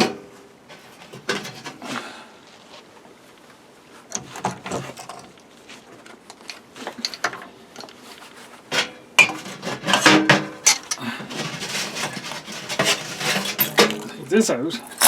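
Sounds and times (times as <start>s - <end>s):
metal objects clinking and scraping: 9.2s - 15.0s.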